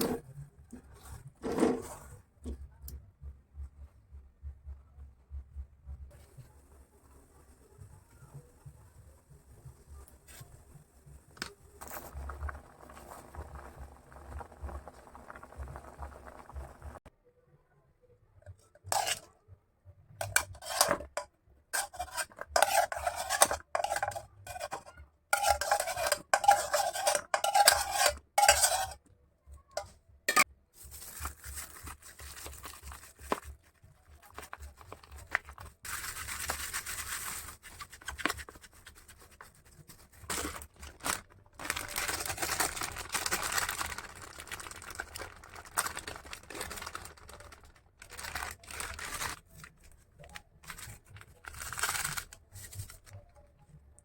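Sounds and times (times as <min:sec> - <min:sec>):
utensil scraping in stirring: 0:00.0 - 0:02.2, 0:09.7 - 0:17.0, 0:18.8 - 0:19.3, 0:20.2 - 0:29.1, 0:29.8 - 0:44.3
utensils clinking on pots: 0:18.8 - 0:19.3, 0:20.2 - 0:29.0.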